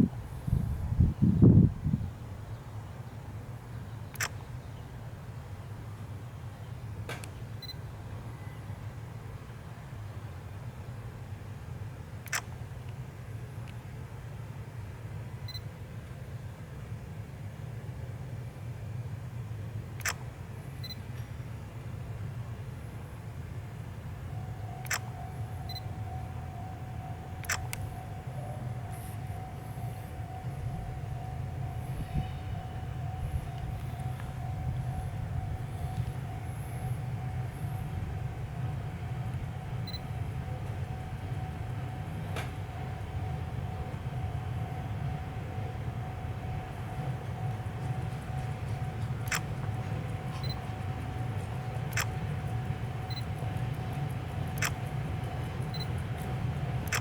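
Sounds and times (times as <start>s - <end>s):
sharp train click: 4.1s - 4.4s, 12.2s - 13.0s, 20.0s - 21.4s, 27.4s - 28.0s, 42.2s - 42.9s, 47.4s - 57.0s
train wheels rumbling on rails: 23.8s - 57.0s
steady mid-pitched tone: 24.0s - 56.0s.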